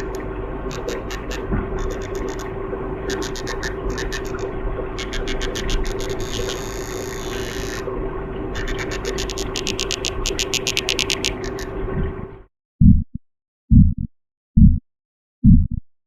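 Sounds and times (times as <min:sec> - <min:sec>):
fish clicking underwater: 0:00.0 - 0:07.9, 0:08.5 - 0:11.8
steady low hum: 0:00.0 - 0:14.8.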